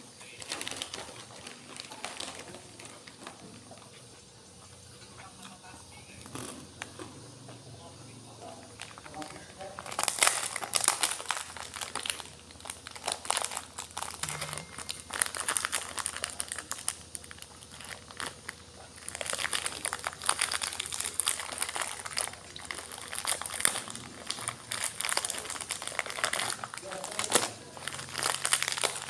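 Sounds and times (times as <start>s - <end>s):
crackers crunching: 0.0s - 29.0s.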